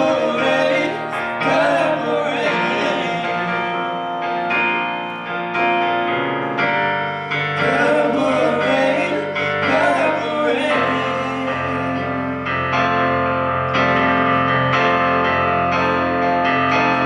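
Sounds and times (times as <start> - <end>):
man singing: 0.0 - 4.2, 7.6 - 12.4
keyboard chords: 0.0 - 17.0.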